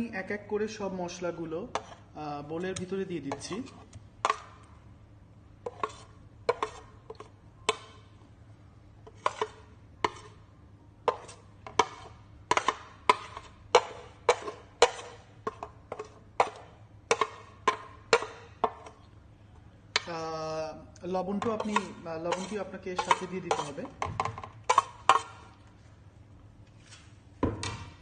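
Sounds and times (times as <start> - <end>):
spoon tapping mixing bowl: 11.1 - 18.9, 21.3 - 25.4.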